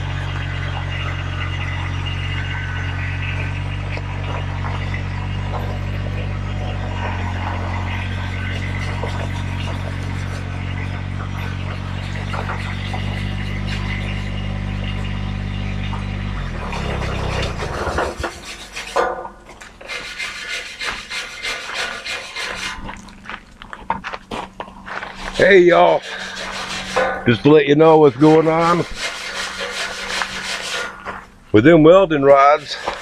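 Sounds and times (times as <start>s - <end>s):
machine low hum: 0.0s - 18.5s, 22.7s - 33.0s
scraping and rubbing on metal: 0.0s - 23.2s, 24.8s - 31.4s, 32.4s - 33.0s
knocks: 17.7s - 19.4s.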